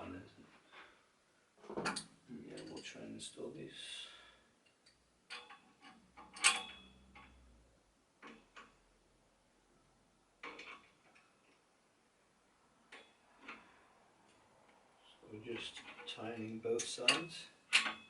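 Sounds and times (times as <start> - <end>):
spanner metal clicks and clinks: 4.8 - 7.4, 16.8 - 18.0.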